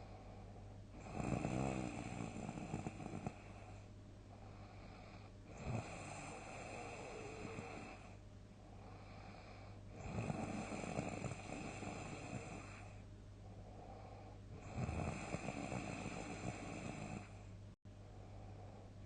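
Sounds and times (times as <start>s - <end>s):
quiet breathing: 0.0s - 19.0s
person snoring loudly: 1.0s - 3.4s, 5.5s - 8.1s, 10.0s - 13.0s, 14.6s - 17.4s.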